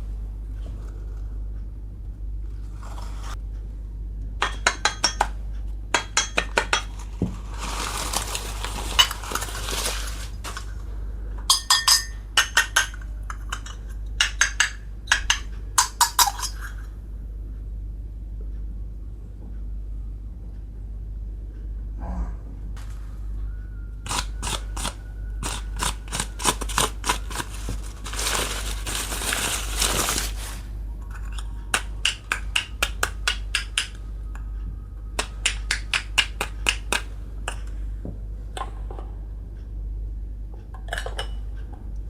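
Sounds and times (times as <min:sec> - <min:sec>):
low hum: 0:00.0 - 0:14.2, 0:14.8 - 0:35.9, 0:36.6 - 0:42.0
rustling: 0:07.0 - 0:10.9, 0:27.2 - 0:30.8
toy kitchenware clinking: 0:11.5 - 0:14.7.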